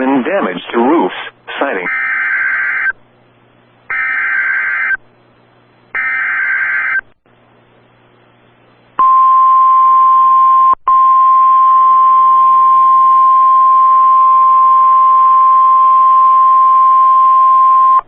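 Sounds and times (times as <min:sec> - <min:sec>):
loud steady high alert tone: 0:03.9 - 0:05.0, 0:06.0 - 0:07.0.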